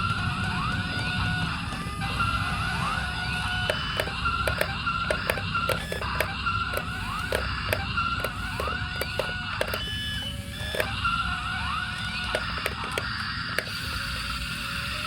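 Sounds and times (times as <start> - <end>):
sharp clicks: 3.6 - 11.2, 12.2 - 14.2.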